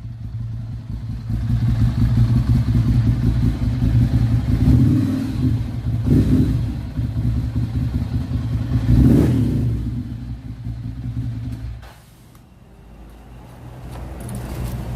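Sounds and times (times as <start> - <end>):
motorcycle engine revving: 0.0 - 11.8.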